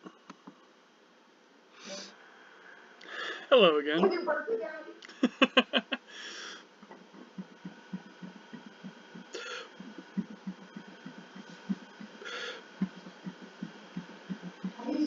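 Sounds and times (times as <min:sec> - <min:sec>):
breathy hiss: 0:01.7 - 0:03.5, 0:06.0 - 0:15.0
faint low pulses: 0:06.9 - 0:15.0.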